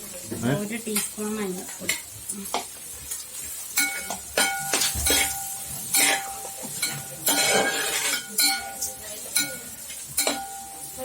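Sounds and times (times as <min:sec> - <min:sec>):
metal spoon scraping steel pot: 0:05.1 - 0:09.6.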